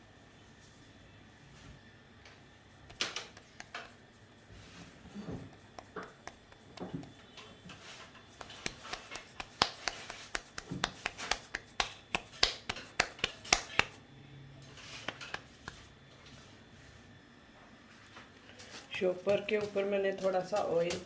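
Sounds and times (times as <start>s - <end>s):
soft dough handling: 0.3s - 14.0s, 14.6s - 21.0s
hands slapping dough: 2.8s - 7.2s, 8.3s - 14.0s, 14.9s - 15.9s, 19.2s - 21.0s.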